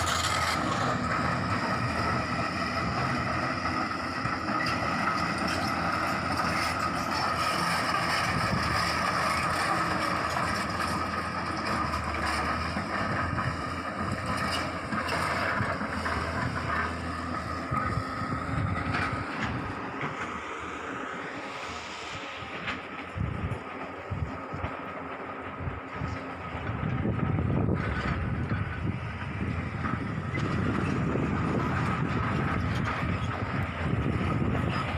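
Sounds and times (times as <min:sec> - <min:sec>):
excavator engine running: 0:00.0 - 0:34.9
steady high whine: 0:16.6 - 0:32.6.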